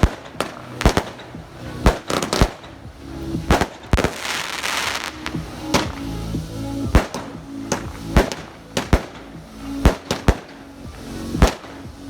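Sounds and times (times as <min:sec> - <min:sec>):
fireworks bangs: 0:00.0 - 0:06.1, 0:06.9 - 0:10.6, 0:11.4 - 0:11.8
fireworks hiss: 0:00.0 - 0:12.0.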